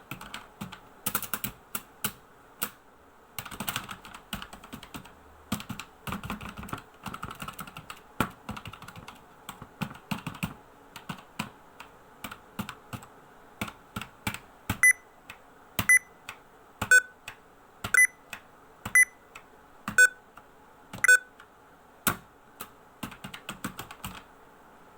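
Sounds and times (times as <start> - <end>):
clicky keys being pressed: 13.0 - 20.2, 21.0 - 21.5.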